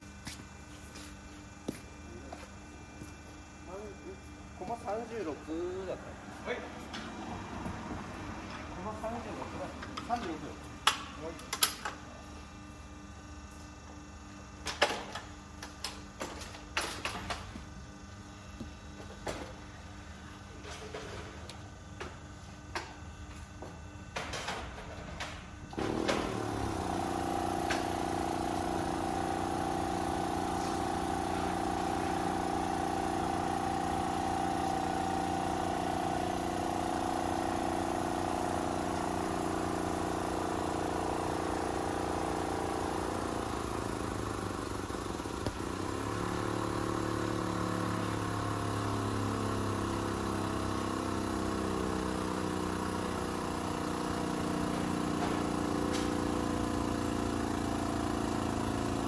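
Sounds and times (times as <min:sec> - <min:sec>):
engine running steadily: 0:14.6 - 0:59.0.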